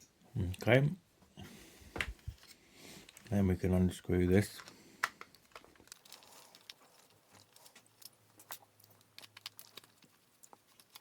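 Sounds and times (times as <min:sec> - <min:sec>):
small parts being handled: 0:04.4 - 0:11.0.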